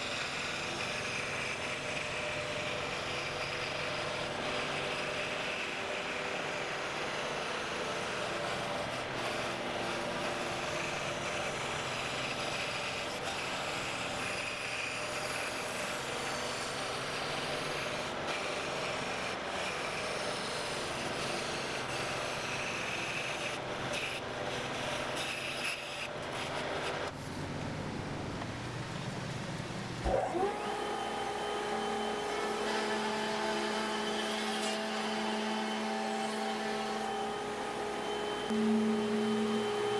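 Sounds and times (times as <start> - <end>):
power tool motor running: 30.0 - 39.9.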